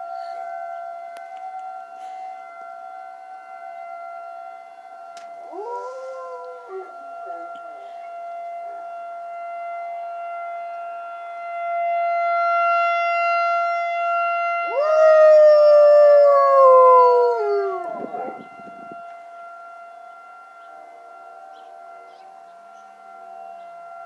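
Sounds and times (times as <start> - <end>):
warning siren steady tone: 0.0 - 24.0
dog howling: 5.4 - 7.6, 14.7 - 18.5.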